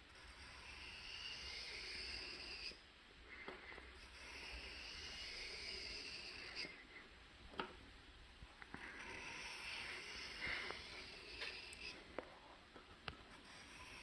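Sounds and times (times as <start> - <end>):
knife scraping on sharpening stone: 0.2 - 2.8, 4.0 - 6.8.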